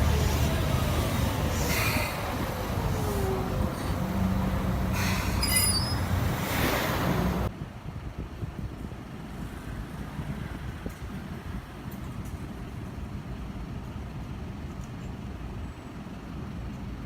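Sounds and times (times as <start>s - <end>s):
high wheel squeal: 0.0s - 6.6s
street background: 0.0s - 17.0s
tram running on street track: 0.0s - 17.0s.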